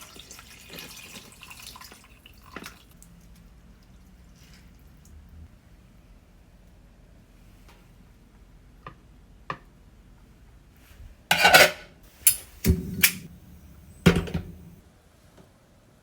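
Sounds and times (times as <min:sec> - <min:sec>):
metal cookware clattering: 0:11.3 - 0:14.8.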